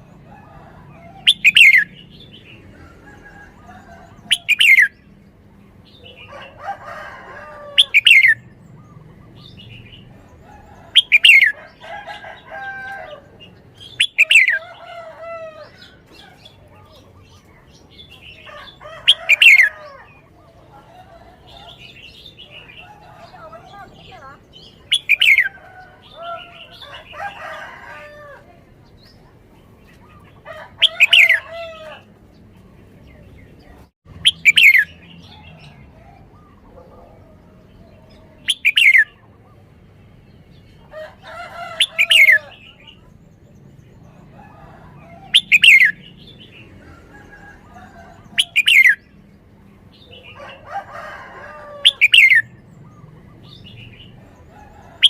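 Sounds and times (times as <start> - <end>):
bird chattering: 0.0 - 2.6, 3.6 - 5.0, 7.8 - 11.8, 13.4 - 27.4, 34.2 - 35.4, 38.1 - 39.3, 45.3 - 46.0, 51.8 - 54.1
bird song phrases: 0.0 - 55.0.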